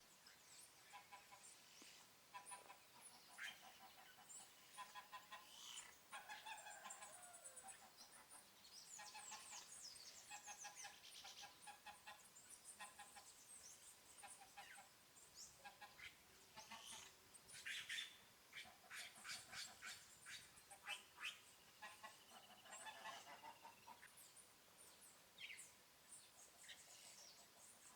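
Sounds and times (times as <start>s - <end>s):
birds chirping and calling: 0.9s - 24.1s.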